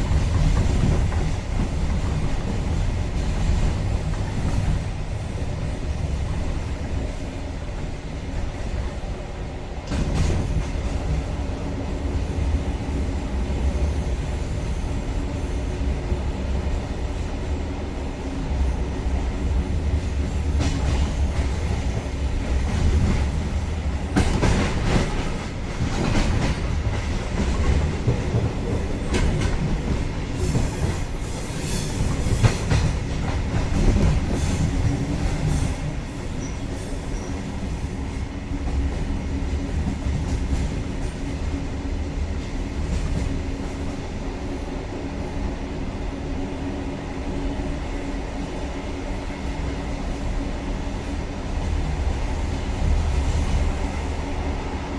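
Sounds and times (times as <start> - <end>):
train rumbling: 0.0 - 54.9
train wheels squealing: 30.4 - 32.8, 34.2 - 37.9.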